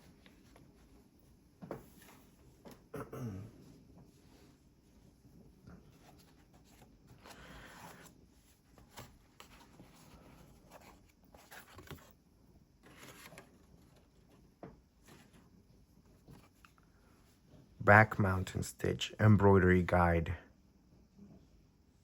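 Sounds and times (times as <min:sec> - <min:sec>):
paper packaging rustling: 0:05.9 - 0:12.2, 0:12.8 - 0:14.4.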